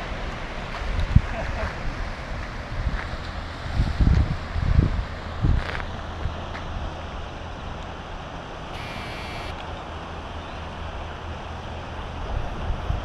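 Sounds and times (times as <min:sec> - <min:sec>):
wind: 0:00.0 - 0:13.0
distant road traffic: 0:05.0 - 0:12.7.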